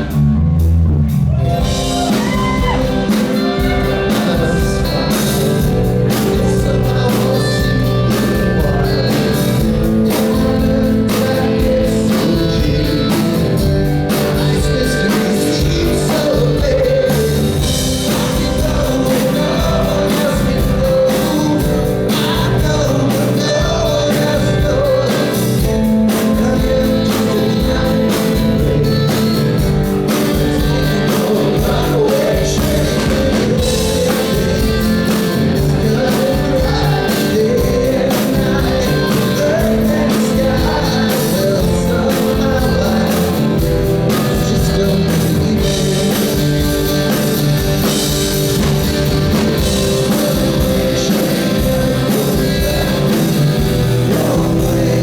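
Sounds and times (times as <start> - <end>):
drum kit: 0.0 - 55.0
electric guitars: 0.0 - 55.0
person singing: 1.3 - 55.0.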